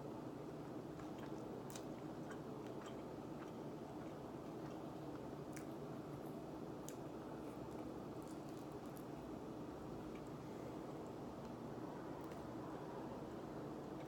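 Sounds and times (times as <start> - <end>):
room noise hum: 0.0 - 14.0
person chewing: 1.0 - 5.8.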